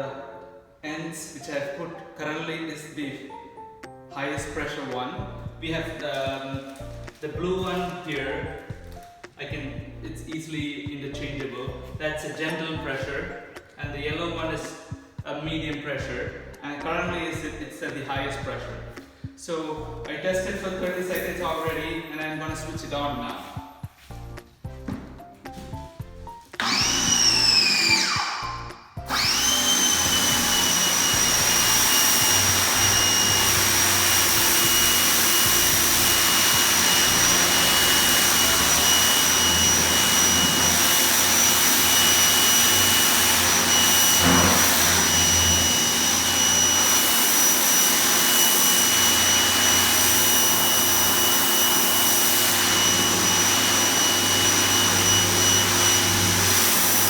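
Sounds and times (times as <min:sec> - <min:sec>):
pressure washer motor whine: 0:26.6 - 0:57.0.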